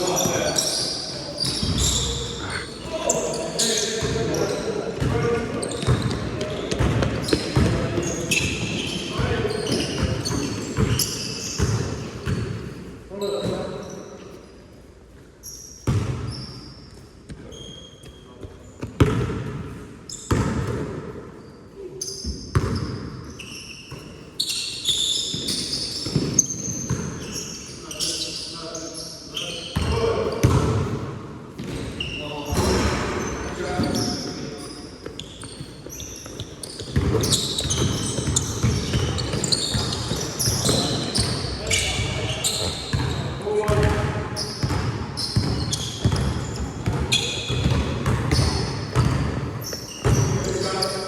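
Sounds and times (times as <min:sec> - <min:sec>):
sneakers squeaking: 0:00.0 - 0:14.5, 0:15.4 - 0:30.9, 0:31.6 - 0:51.0
basketball bouncing: 0:36.3 - 0:40.9, 0:42.9 - 0:49.4.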